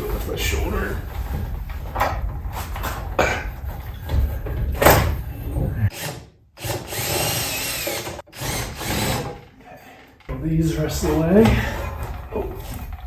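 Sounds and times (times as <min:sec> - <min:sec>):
hardware knocking and clattering: 0:01.1 - 0:05.4
power drill running: 0:06.0 - 0:09.4.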